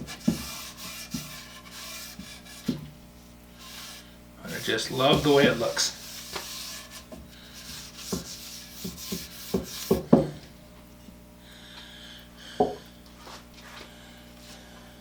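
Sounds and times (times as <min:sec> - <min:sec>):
rag rubbing oil on wood: 0:00.0 - 0:02.8, 0:03.6 - 0:10.2.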